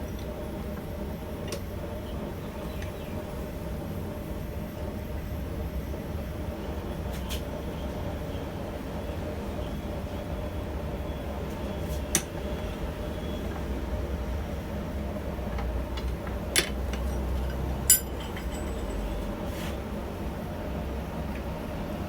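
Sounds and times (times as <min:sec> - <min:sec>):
sharp metallic clinks: 0:17.9 - 0:19.1.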